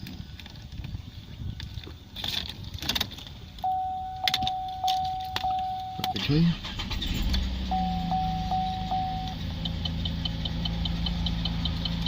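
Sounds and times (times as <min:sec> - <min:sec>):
car keys jangling: 0:02.2 - 0:07.0
electronic warning chime: 0:03.6 - 0:06.3, 0:07.7 - 0:09.4.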